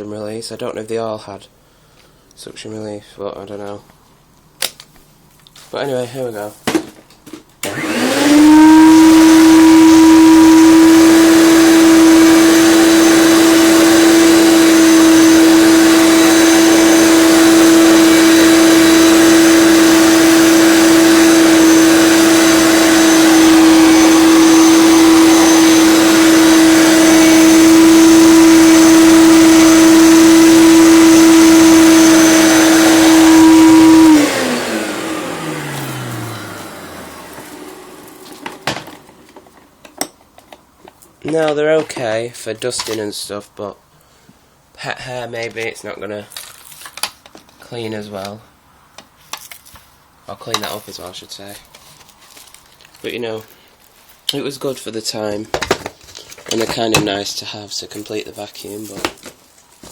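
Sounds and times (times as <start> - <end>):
vacuum cleaner motor whining: 7.6 - 39.8.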